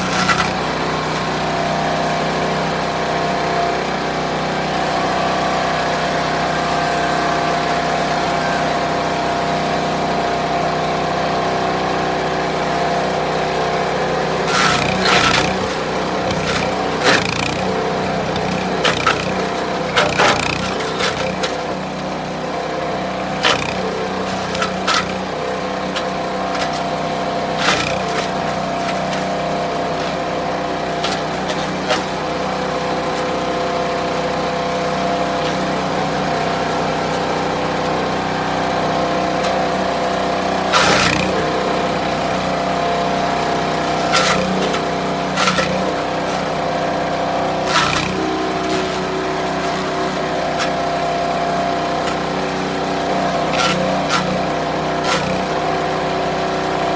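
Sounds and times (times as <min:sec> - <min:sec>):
branches cracking in chipper: 0:00.0 - 0:01.5, 0:14.3 - 0:37.6, 0:39.0 - 0:56.1
wood chipper engine running: 0:00.0 - 0:56.9.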